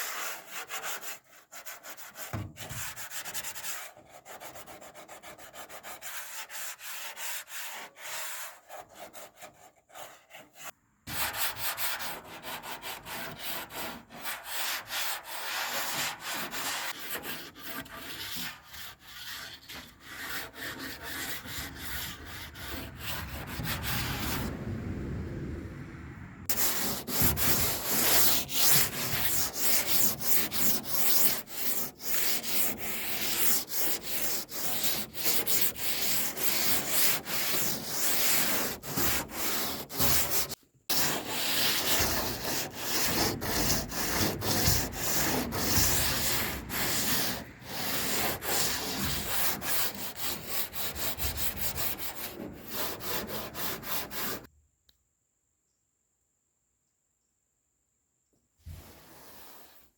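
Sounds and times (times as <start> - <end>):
sanding sheet metal: 11.1 - 24.5, 26.5 - 54.5.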